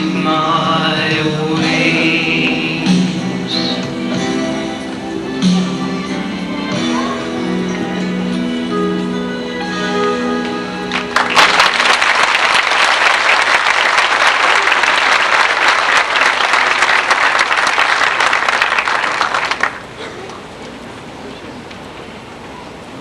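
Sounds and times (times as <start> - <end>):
held notes of a song: 0.0 - 11.3
audience applause: 10.9 - 20.0.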